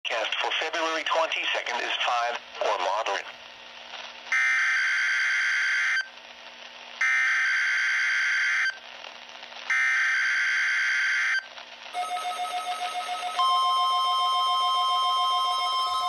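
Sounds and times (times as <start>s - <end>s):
radio hiss: 0.1s - 4.3s.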